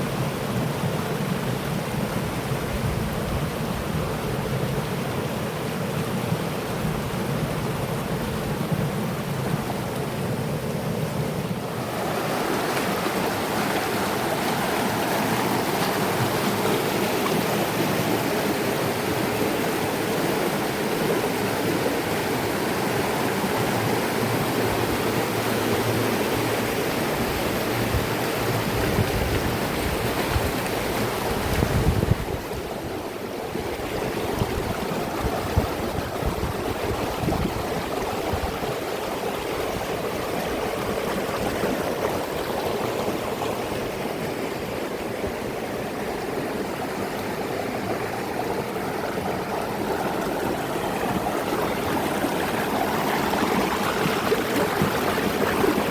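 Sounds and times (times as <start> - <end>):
river water rushing over rocks: 0.1 - 55.9.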